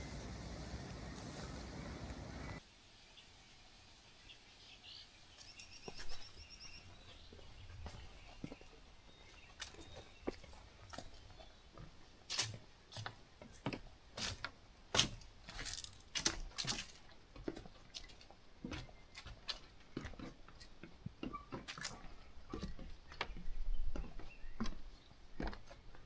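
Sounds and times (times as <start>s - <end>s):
footsteps crunching on a trail: 5.4s - 26.0s.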